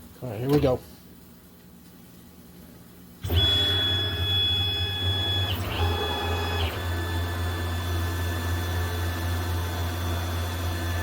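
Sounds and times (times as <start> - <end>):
high machine whine: 3.2 - 11.0
lathe motor hum: 3.3 - 11.0.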